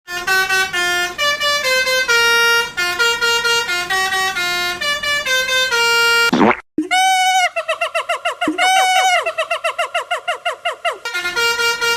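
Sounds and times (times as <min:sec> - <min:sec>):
musical bus horn tune: 0:00.1 - 0:06.3, 0:11.1 - 0:11.9.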